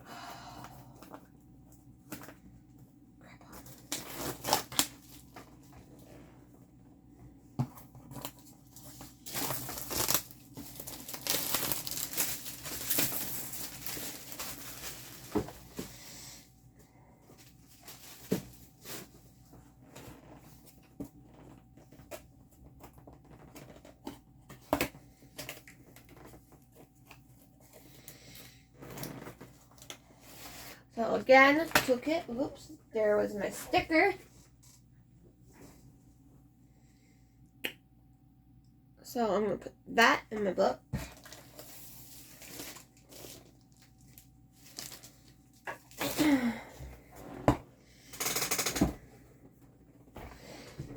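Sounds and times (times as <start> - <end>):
packaging tearing and crinkling: 3.7 - 5.6, 8.2 - 15.4, 41.1 - 46.2.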